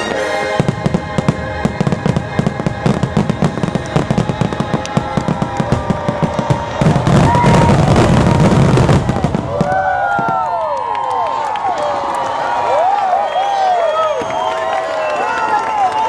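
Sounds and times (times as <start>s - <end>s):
music: 0.0s - 7.4s
fireworks popping and crackling: 0.0s - 10.6s.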